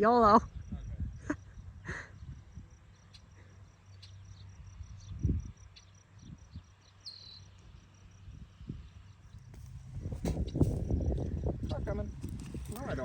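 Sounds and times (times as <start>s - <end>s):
insects chirping: 0.0s - 13.0s
low rumble: 9.3s - 13.0s
dull thump: 9.4s - 11.3s.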